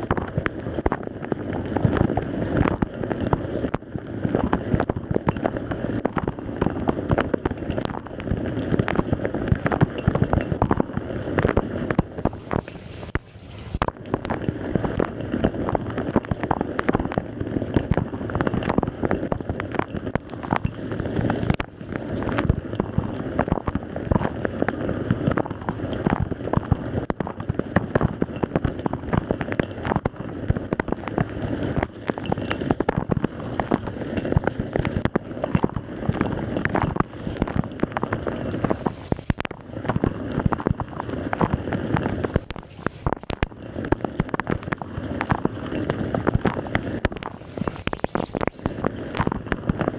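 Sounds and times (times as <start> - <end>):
brief high whines: 12.0 - 14.9, 21.4 - 22.3, 38.4 - 40.4, 42.1 - 43.9, 47.1 - 48.8.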